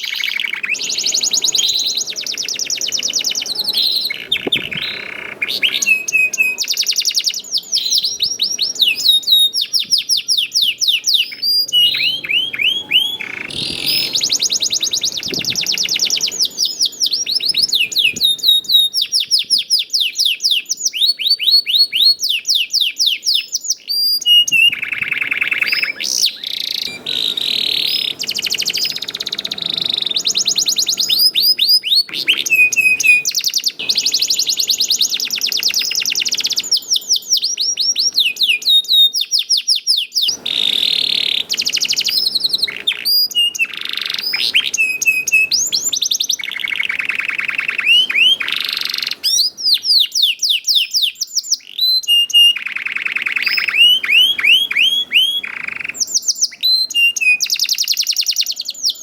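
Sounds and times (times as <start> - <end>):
canary singing trills: 0.0 - 59.0.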